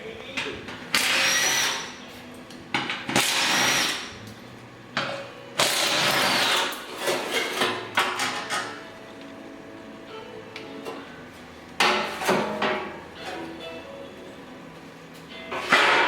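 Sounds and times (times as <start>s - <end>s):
power wrench running: 0.9s - 2.0s, 3.1s - 4.2s, 5.6s - 6.8s.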